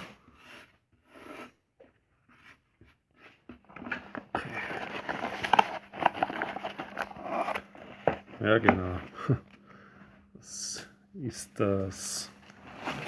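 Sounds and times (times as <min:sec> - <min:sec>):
packaging rustling and clicking: 0:03.6 - 0:09.0.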